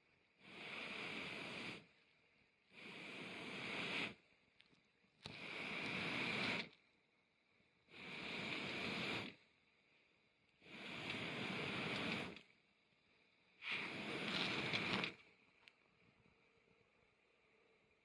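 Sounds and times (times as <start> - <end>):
air puffs through blowing pipe: 0.0 - 2.0, 2.6 - 4.3, 5.2 - 6.8, 7.9 - 9.6, 10.6 - 12.6, 13.6 - 15.4.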